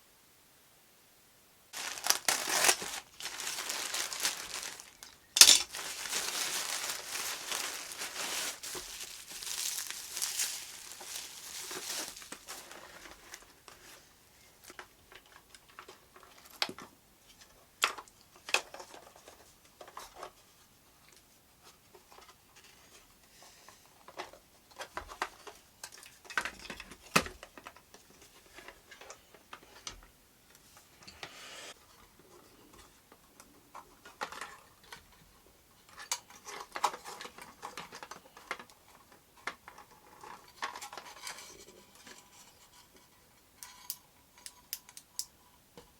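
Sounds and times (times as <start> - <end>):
rustling: 1.7 - 16.6
small parts clicking and tapping: 43.6 - 45.4.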